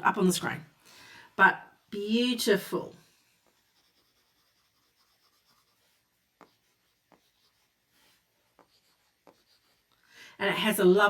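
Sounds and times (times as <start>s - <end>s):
stylus scratching on screen: 3.4s - 10.0s.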